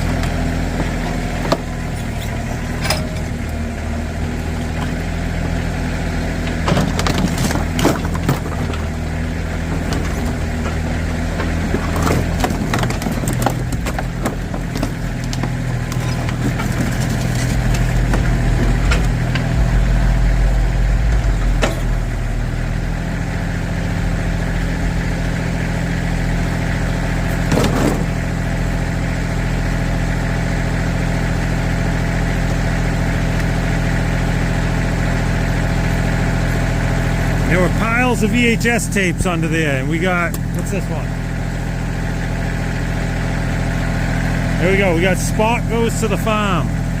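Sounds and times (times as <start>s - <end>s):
backhoe engine running: 0.0s - 47.0s
bucket clanking against debris: 11.4s - 19.6s.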